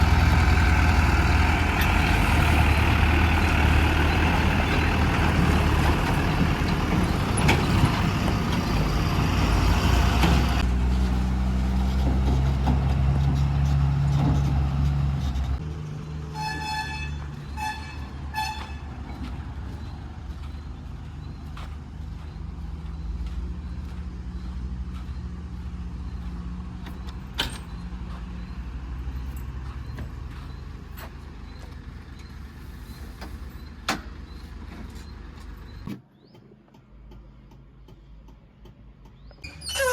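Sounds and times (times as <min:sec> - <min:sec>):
heavy diesel engine running: 0:00.0 - 0:35.9
vehicle horn tooting: 0:16.3 - 0:18.9.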